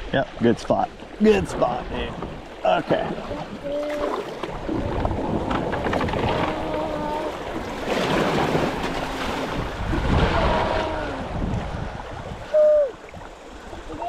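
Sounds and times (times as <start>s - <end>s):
water splashing around kayak: 0.0s - 14.0s
wind on microphone: 3.1s - 14.0s.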